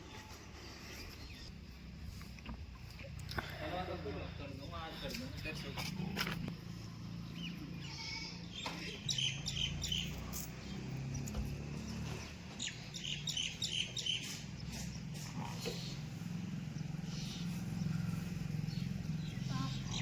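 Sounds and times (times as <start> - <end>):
diesel engine running: 9.2 - 20.0.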